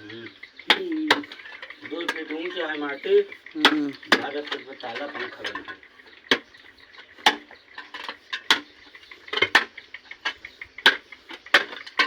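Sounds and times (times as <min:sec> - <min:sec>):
digging tool knocking earth and stone: 0:06.3 - 0:06.5, 0:07.2 - 0:12.0.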